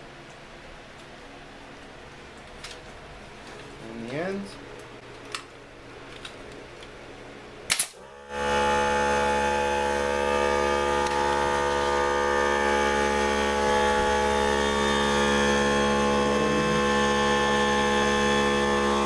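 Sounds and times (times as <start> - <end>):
air compressor humming: 0.0 - 19.0
nail gun shots: 7.7 - 8.0.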